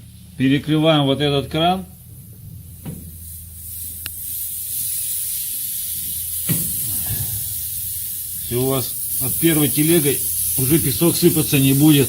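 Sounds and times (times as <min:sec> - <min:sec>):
compressed air hissing: 0:01.9 - 0:12.0
valve knock: 0:02.3 - 0:03.4, 0:06.0 - 0:07.8.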